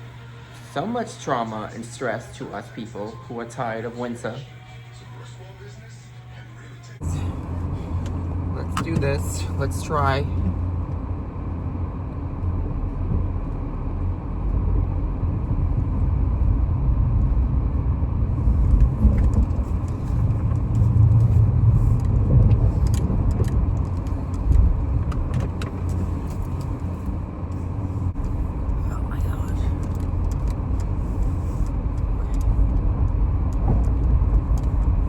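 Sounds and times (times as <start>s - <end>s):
car engine and tyres rumbling: 0.0s - 4.4s, 7.0s - 35.0s
light clicks and rattles: 18.5s - 28.8s, 29.4s - 35.0s.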